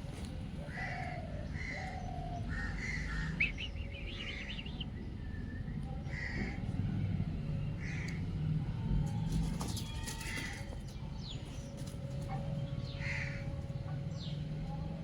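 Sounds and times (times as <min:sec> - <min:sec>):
steady low hum: 0:00.0 - 0:09.2
birds calling: 0:00.6 - 0:06.7, 0:09.4 - 0:15.0
higher bird chirps: 0:02.9 - 0:05.1.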